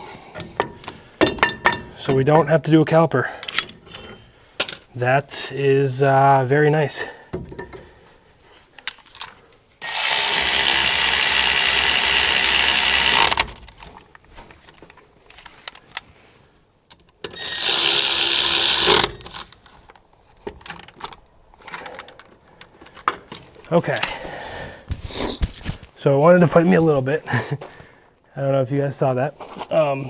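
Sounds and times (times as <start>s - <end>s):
handheld power tool running: 9.8s - 13.7s, 17.4s - 19.5s
light clicks and handling noise: 13.6s - 17.3s.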